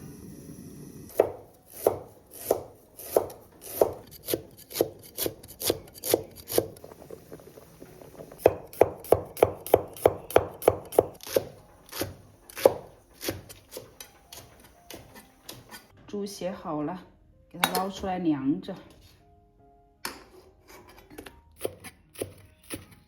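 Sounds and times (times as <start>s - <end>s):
knife chopping on wooden board: 1.1s - 6.7s, 8.4s - 15.8s.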